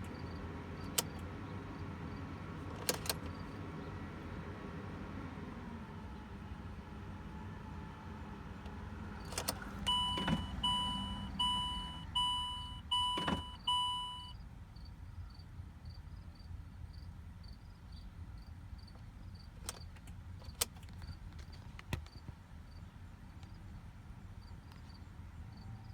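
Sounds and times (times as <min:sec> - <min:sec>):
dashboard warning chime: 0:09.3 - 0:14.4.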